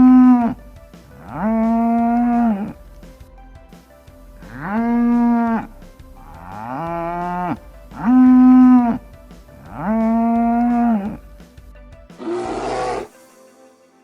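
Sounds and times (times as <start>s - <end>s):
cow mooing: 12.2s - 13.1s.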